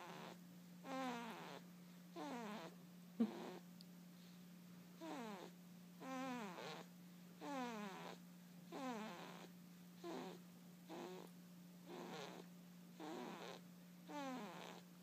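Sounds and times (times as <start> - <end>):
steady low hum: 0.0 - 15.0
whistling snoring: 13.0 - 14.8.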